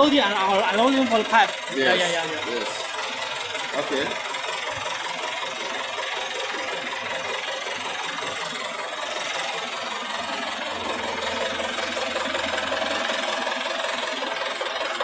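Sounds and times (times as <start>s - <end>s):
drilling rig engine running: 0.0s - 15.0s.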